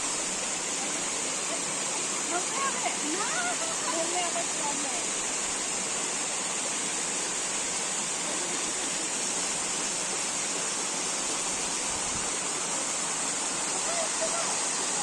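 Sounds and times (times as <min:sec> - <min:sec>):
waterfall rushing water hiss: 0:00.0 - 0:15.0.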